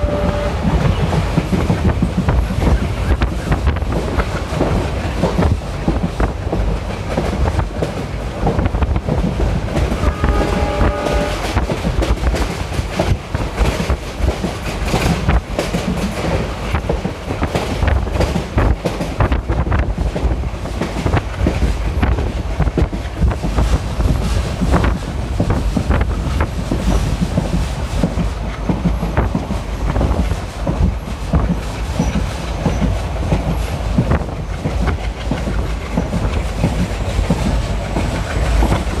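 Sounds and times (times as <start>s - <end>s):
train horn: 0.0s - 1.1s, 9.9s - 11.6s
train rumble and wheel clacks: 0.0s - 39.0s.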